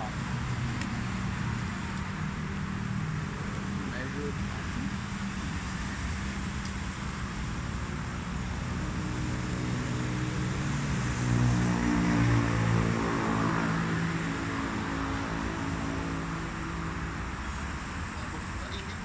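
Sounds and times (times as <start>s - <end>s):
outdoor background noise: 0.0s - 19.0s
vehicle engine running: 0.0s - 19.0s.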